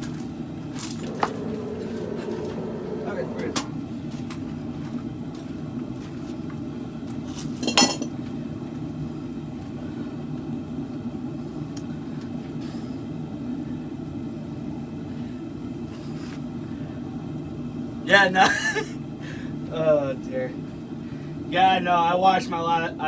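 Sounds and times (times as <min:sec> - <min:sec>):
steady low hum: 0:00.9 - 0:04.0.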